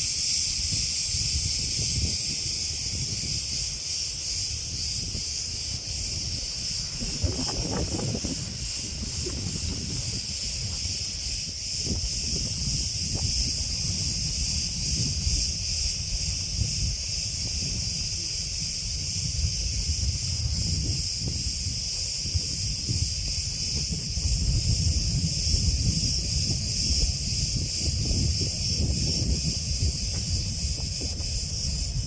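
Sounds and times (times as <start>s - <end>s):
cicadas buzzing: 0.0s - 32.0s
wind rumbling on microphone: 0.0s - 32.0s.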